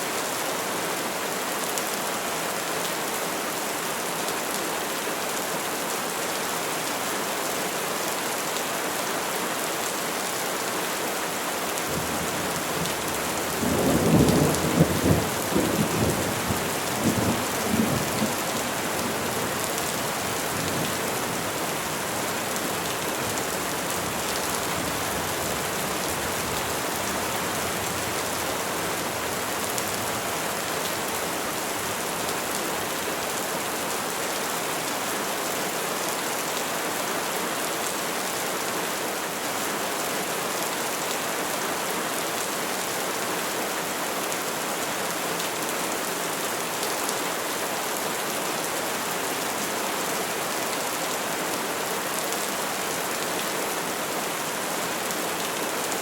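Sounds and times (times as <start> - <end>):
rain pattering on leaves: 5.4 - 38.1.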